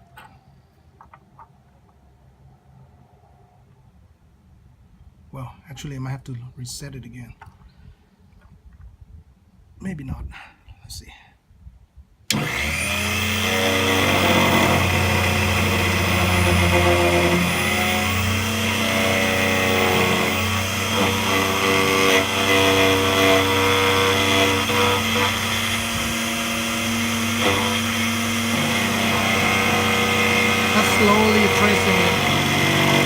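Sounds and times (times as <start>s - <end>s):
key cutting machine milling: 12.3s - 33.0s.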